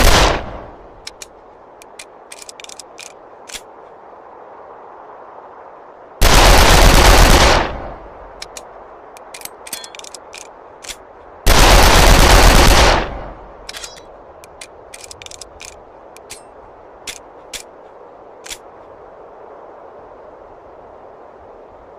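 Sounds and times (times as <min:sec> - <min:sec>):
metallic clicks and clinks: 0:01.1 - 0:03.7, 0:08.4 - 0:11.0, 0:13.7 - 0:16.5.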